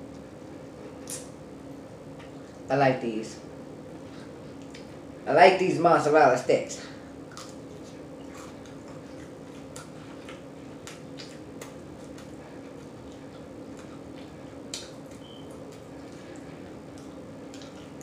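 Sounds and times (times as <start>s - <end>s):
steady low hum: 0.0s - 18.0s
chewing and mouth smacking: 4.1s - 5.0s, 7.2s - 18.0s.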